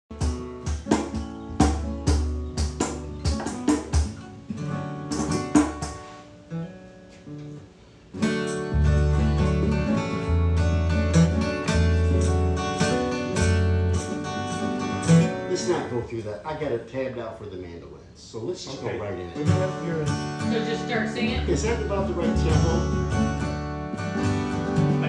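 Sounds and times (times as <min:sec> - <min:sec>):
acoustic guitar playing: 0:00.1 - 0:16.6, 0:18.6 - 0:25.0.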